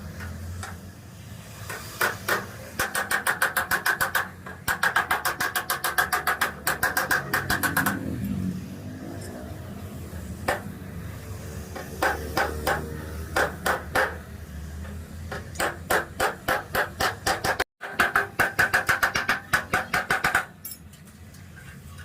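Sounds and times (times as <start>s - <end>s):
hammer striking metal panel: 1.7s - 8.1s, 15.3s - 20.6s.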